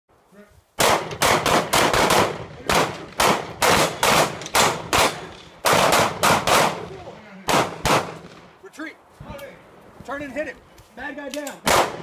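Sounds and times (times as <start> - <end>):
handgun shots: 0.8 - 6.9, 7.5 - 8.4, 11.4 - 12.0.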